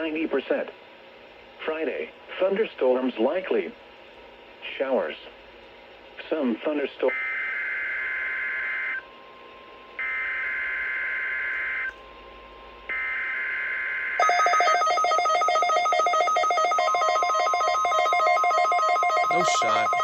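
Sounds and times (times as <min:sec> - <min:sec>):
rapidly pulsing electronic beep: 0:12.9 - 0:20.0
two-tone digital data bursts: 0:16.9 - 0:20.0.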